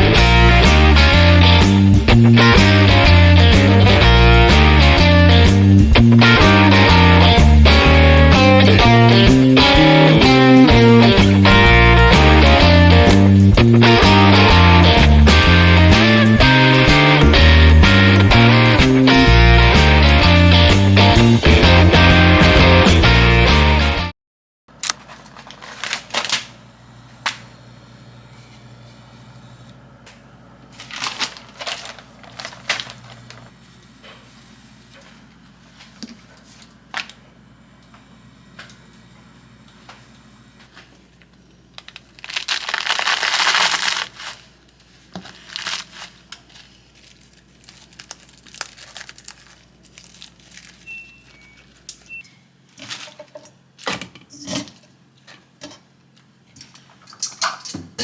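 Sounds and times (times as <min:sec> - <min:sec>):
low background hum: 0:24.7 - 0:58.0
objects clicking and rustling: 0:30.8 - 0:33.4, 0:56.5 - 0:58.0.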